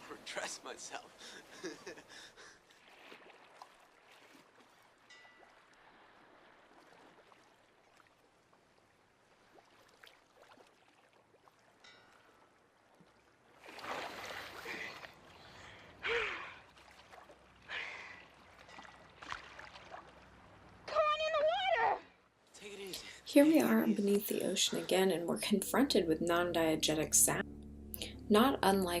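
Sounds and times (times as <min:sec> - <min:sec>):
faint surf: 0:00.0 - 0:25.1
water splashes: 0:00.0 - 0:27.4
woman gasping: 0:14.6 - 0:16.6.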